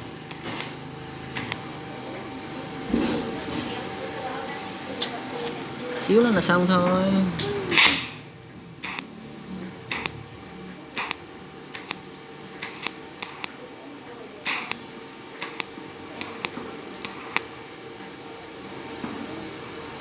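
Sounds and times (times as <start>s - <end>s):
welder sharp snaps: 1.3s - 1.6s, 7.7s - 9.1s, 9.9s - 10.2s, 11.0s - 12.0s, 12.6s - 13.6s, 14.4s - 14.8s, 15.4s - 17.5s.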